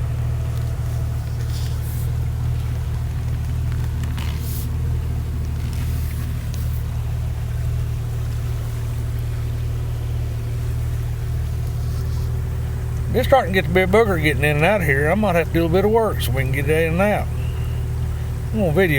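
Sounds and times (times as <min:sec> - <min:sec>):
vehicle engine rumbling: 0:00.0 - 0:18.9
scraping or rustling: 0:11.6 - 0:12.4.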